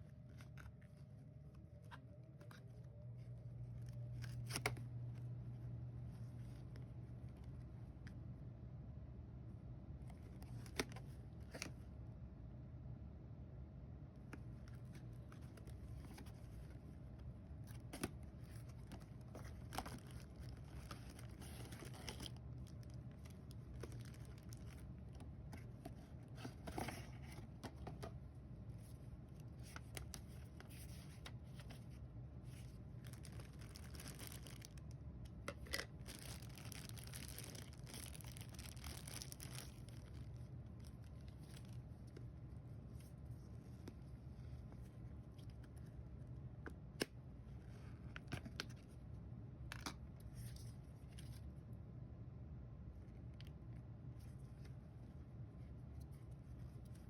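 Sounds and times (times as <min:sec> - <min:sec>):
low steady hum: 0:00.0 - 0:57.0
packaging tearing and crinkling: 0:19.4 - 0:24.8, 0:33.0 - 0:35.0, 0:35.6 - 0:41.8.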